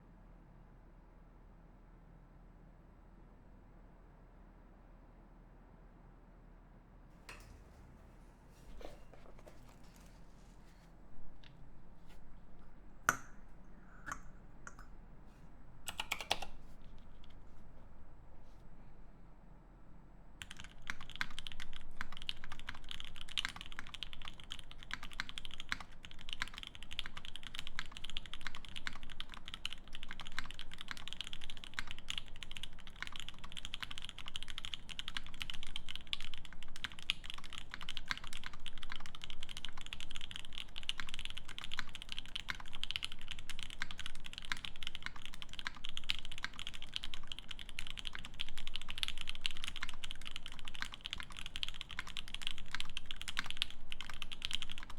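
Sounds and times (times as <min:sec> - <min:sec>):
fast typing on mechanical keyboard: 0:15.9 - 0:17.4, 0:20.4 - 0:54.9.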